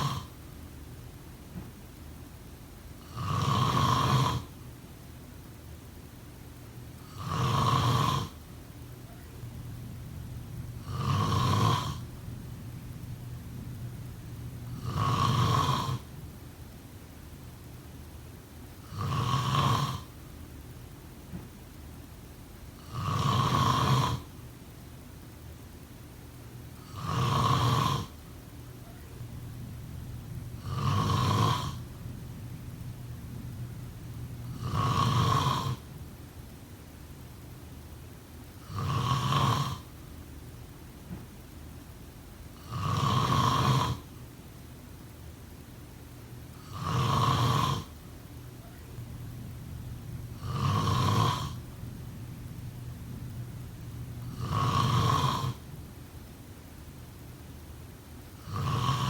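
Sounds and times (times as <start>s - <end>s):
person snoring: 0.0s - 0.3s, 3.0s - 4.5s, 7.1s - 8.4s, 10.4s - 12.2s, 14.5s - 16.1s, 18.8s - 20.1s, 22.8s - 24.3s, 26.8s - 28.2s, 30.2s - 35.9s, 38.6s - 39.9s, 42.6s - 44.1s, 46.6s - 48.0s, 48.9s - 53.2s, 53.8s - 55.7s, 58.4s - 59.0s.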